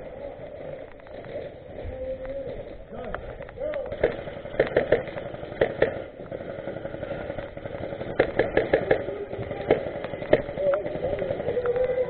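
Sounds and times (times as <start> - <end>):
airsoft gun shots: 3.7 - 11.7.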